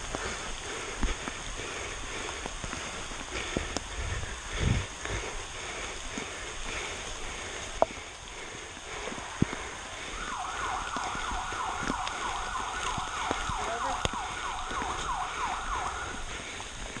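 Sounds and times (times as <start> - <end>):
electronic siren sweeping: 10.1 - 16.3.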